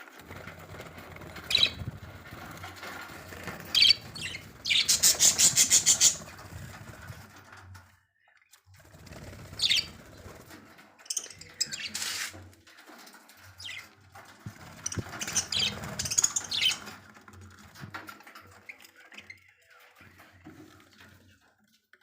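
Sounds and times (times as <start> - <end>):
wing flapping: 0.0 - 7.9, 8.7 - 18.7
budgerigars chirping: 1.5 - 1.8, 3.8 - 6.2.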